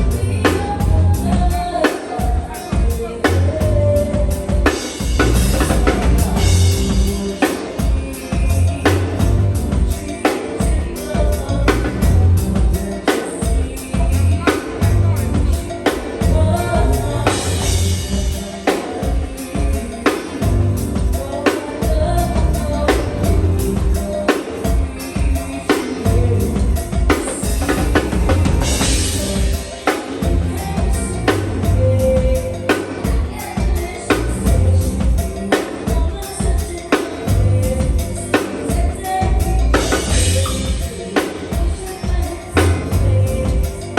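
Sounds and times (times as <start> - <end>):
heavy bass: 0.0 - 1.6, 3.3 - 4.5, 5.1 - 7.3, 8.4 - 10.0, 11.4 - 12.9, 14.0 - 18.4, 20.4 - 24.1, 26.1 - 33.4, 34.1 - 35.3, 37.3 - 40.8, 42.5 - 43.9
drum kit beat: 0.0 - 43.9
live band playing: 0.0 - 43.9
person singing: 0.0 - 43.9.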